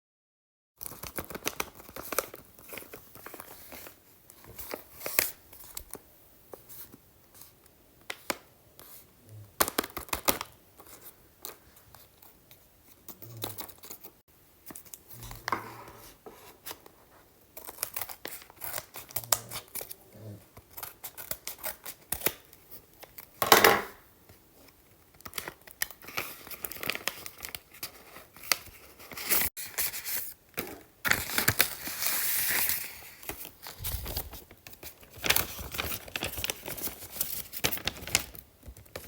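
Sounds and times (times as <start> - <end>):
packaging crinkling and rustling: 0.8 - 6.0, 9.6 - 20.0, 24.6 - 39.0.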